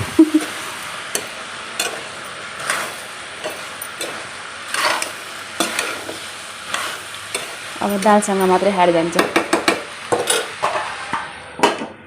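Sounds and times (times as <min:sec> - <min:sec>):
vegetables sizzling in a pan: 0:00.0 - 0:11.7
spatula scraping a pan: 0:00.4 - 0:08.2.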